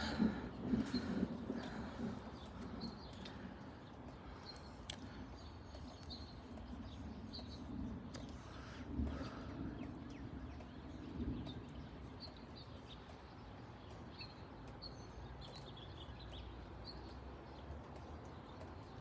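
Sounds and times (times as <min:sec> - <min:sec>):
distant rumble: 0:00.0 - 0:14.1
birds chirping: 0:00.0 - 0:19.0
wind: 0:00.0 - 0:19.0.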